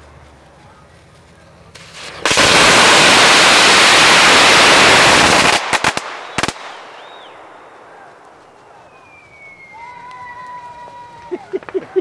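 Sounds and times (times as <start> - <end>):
firecrackers crackling: 0.0 - 12.0
firecracker bangs: 1.7 - 9.7.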